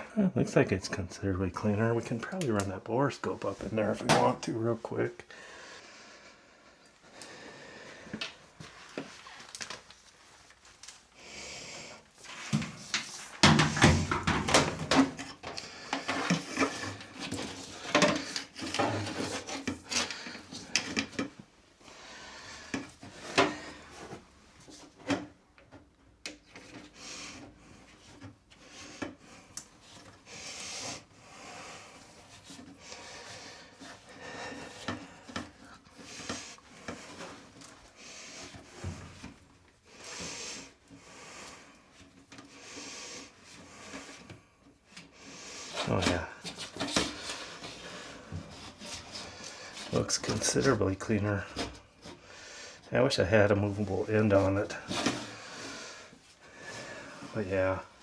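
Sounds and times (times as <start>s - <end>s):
rubbing and scraping on duct: 11.8s - 21.3s, 26.5s - 58.0s.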